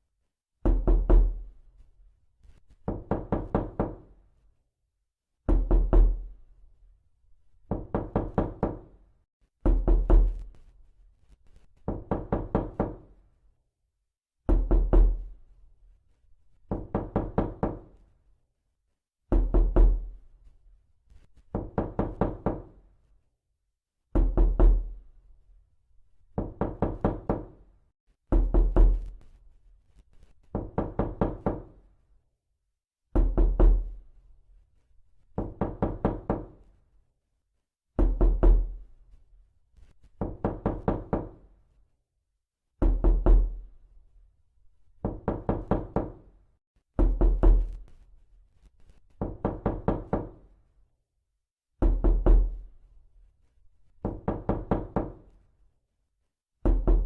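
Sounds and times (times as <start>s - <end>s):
rapid knocking on a door: 0.6s - 1.4s, 2.8s - 4.2s, 5.5s - 6.3s, 7.7s - 8.9s, 9.6s - 10.5s, 11.8s - 13.1s, 14.5s - 15.3s, 16.7s - 18.0s, 19.3s - 20.1s, 21.5s - 22.8s, 24.2s - 25.0s, 26.3s - 27.6s, 28.3s - 29.1s, 30.5s - 31.8s, 33.2s - 34.0s, 35.4s - 36.6s, 38.0s - 38.8s, 40.2s - 41.4s, 42.8s - 43.6s, 45.0s - 46.3s, 47.0s - 47.9s, 49.2s - 50.5s, 51.8s - 52.6s, 54.0s - 55.4s, 56.6s - 57.0s.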